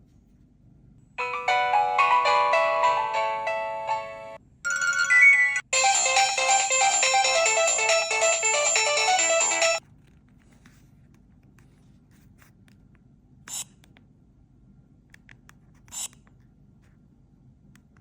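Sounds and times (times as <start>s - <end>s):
phone ringtone melody: 1.2s - 9.8s.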